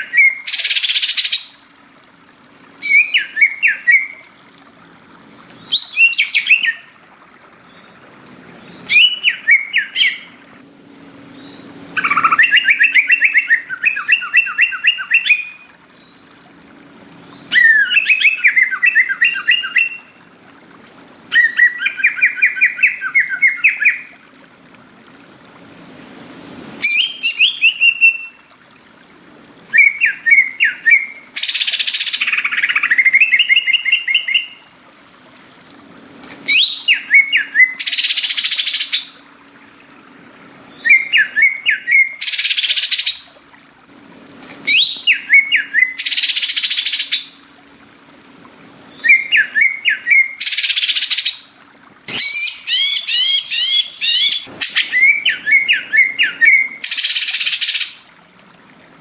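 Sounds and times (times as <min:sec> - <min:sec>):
bird warbling whistled phrases: 0:00.0 - 0:01.6, 0:02.8 - 0:04.3, 0:05.6 - 0:07.0, 0:08.8 - 0:10.4, 0:11.4 - 0:15.7, 0:17.5 - 0:20.1, 0:21.3 - 0:24.1, 0:26.8 - 0:28.4, 0:29.7 - 0:34.6, 0:36.5 - 0:39.2, 0:40.7 - 0:43.4, 0:44.6 - 0:47.4, 0:48.9 - 0:58.0.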